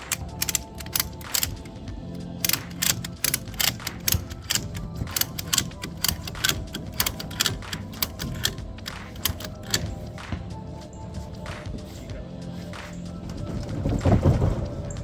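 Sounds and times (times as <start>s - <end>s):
ratchet strap clicking: 0.0s - 1.8s, 2.4s - 10.1s
background music: 0.0s - 15.0s.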